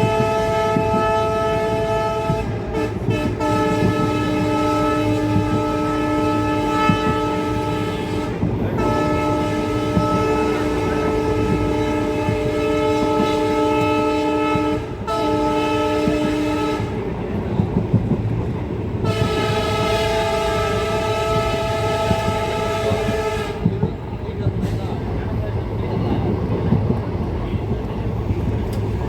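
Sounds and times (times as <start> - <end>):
locomotive air horn: 0.0 - 17.4, 19.0 - 23.7
rail clicks: 0.0 - 29.0
train running noise: 0.0 - 29.0.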